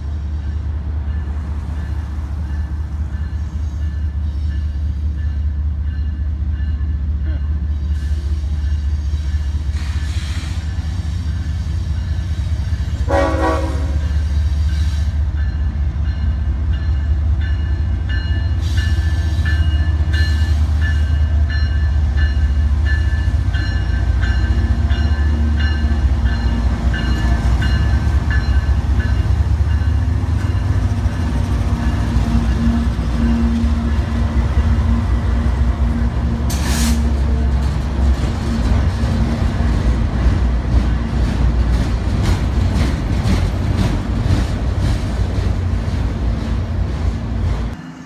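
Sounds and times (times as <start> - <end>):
train rumbling: 0.0 - 48.0
train horn blast: 13.0 - 14.2.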